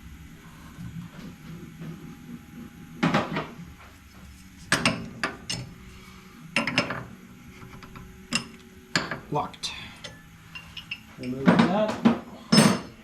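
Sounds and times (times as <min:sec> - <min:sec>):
faint steady hum: 0:00.0 - 0:13.0.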